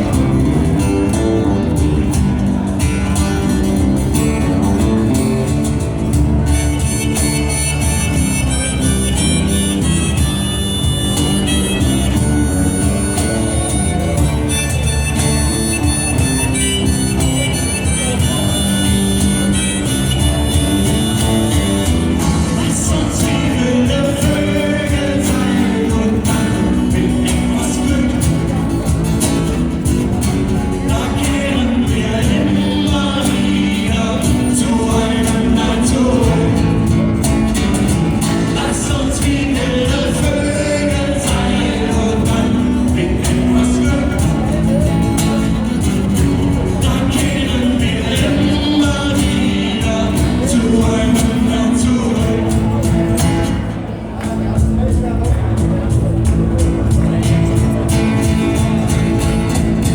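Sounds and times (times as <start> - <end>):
band playing live: 0.0 - 59.9
person singing: 6.8 - 29.0, 30.4 - 53.1.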